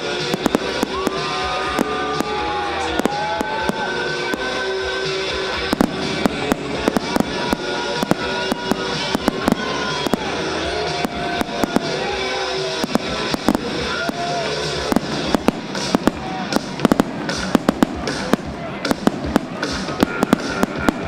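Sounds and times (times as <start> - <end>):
fireworks bangs and crackles: 0.0 - 21.0
music: 0.0 - 21.0
whistling fireworks: 0.0 - 21.0.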